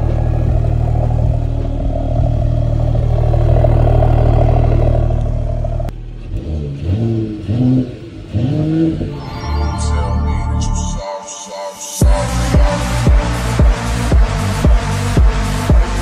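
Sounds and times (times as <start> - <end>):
rising and falling pitch glides: 0.0 - 5.9, 8.9 - 13.7
car engine running: 0.0 - 10.1.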